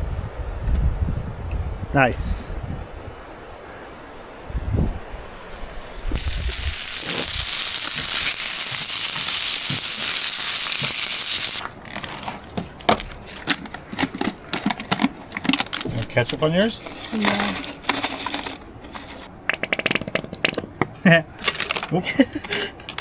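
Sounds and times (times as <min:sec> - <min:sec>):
burgers sizzling: 0:05.0 - 0:11.6.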